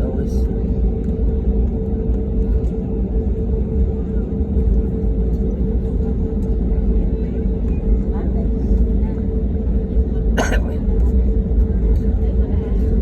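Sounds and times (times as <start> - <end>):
aircraft cabin engine rumble: 0.0 - 13.0.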